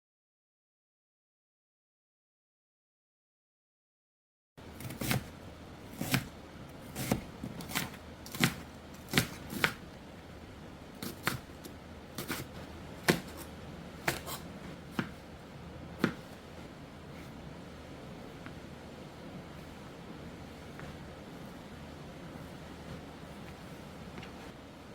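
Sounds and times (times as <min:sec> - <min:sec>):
knife cutting food: 0:04.8 - 0:09.8, 0:11.0 - 0:15.2, 0:16.0 - 0:16.4.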